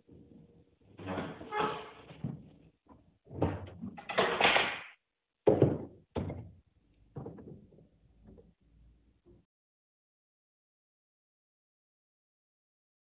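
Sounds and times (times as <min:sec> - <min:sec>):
parts knocking on hard surface: 0:05.5 - 0:08.4.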